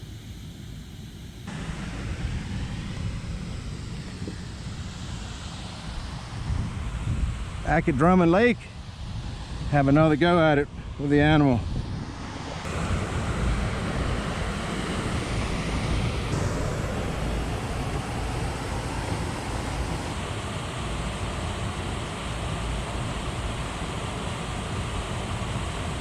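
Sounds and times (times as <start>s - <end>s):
wind buffeting microphone: 1.6s - 26.0s.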